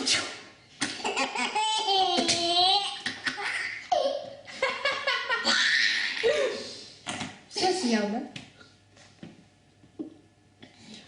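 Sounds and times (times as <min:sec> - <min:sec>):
baby laughing: 0:00.8 - 0:06.5.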